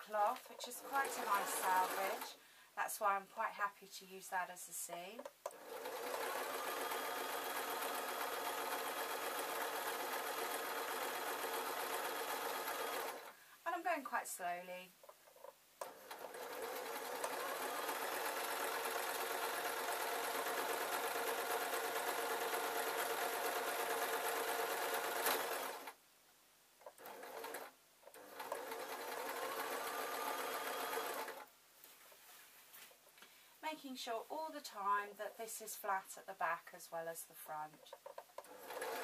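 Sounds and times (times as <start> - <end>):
sewing machine stitching: 0.1 - 2.4, 5.2 - 13.4, 15.2 - 26.0, 26.8 - 31.5, 38.0 - 39.0.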